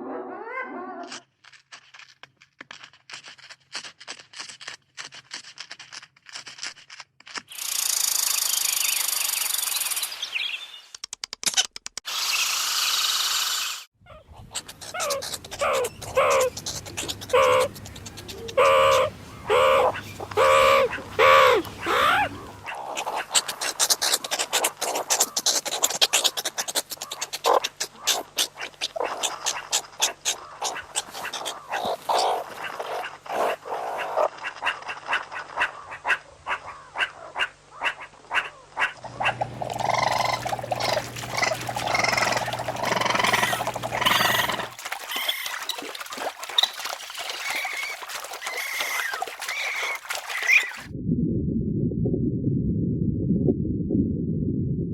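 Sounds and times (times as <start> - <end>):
animal calls with wavering pitch: 14.1 - 50.9
rapid chirps and clicks: 14.5 - 19.1, 22.6 - 33.0, 39.0 - 50.9.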